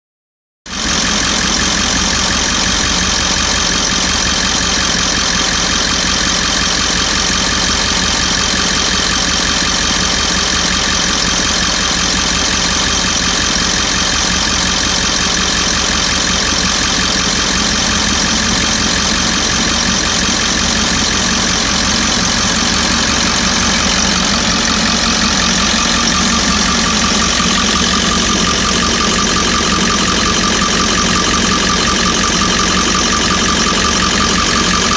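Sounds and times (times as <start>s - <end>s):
diesel engine idling: 0.7s - 34.9s
thin steady whine: 11.6s - 34.9s.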